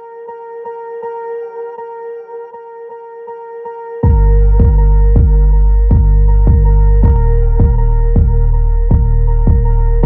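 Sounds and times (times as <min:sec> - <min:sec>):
background music with bass and beat: 0:04.0 - 0:10.0.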